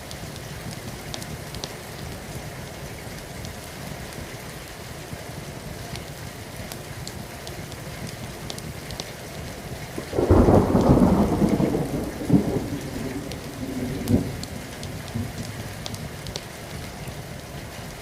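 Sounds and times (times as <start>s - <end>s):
falling rain: 0.0s - 18.0s
thunder rumbling and cracking: 10.0s - 16.4s.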